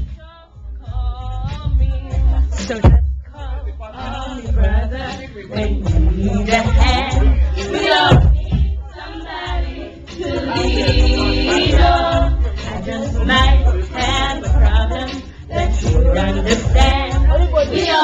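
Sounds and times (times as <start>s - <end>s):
steady low beat: 0.0s - 18.0s
group singing a church song: 3.9s - 18.0s.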